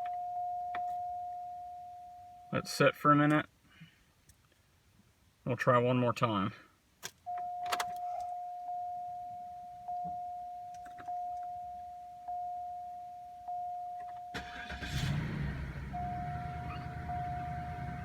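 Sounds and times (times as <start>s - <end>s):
car warning chime: 0.0s - 2.8s, 7.3s - 18.0s
car engine cranking and misfiring: 14.3s - 18.0s.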